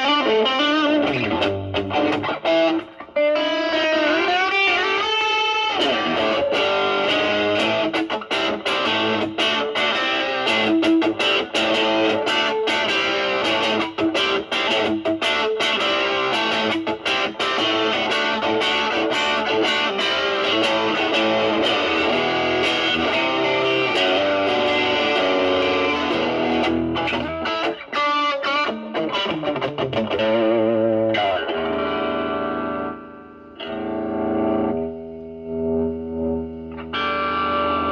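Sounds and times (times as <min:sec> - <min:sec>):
distorted electric guitar blues lines: 0:00.0 - 0:37.9.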